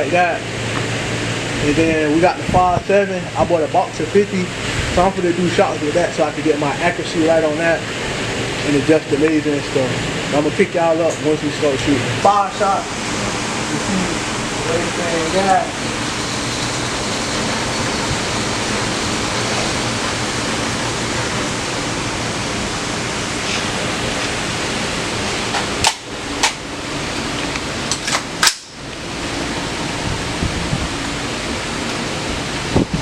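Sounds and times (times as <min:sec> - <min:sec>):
wind noise on microphone: 0:02.4 - 0:03.0, 0:16.6 - 0:18.8, 0:29.6 - 0:33.0.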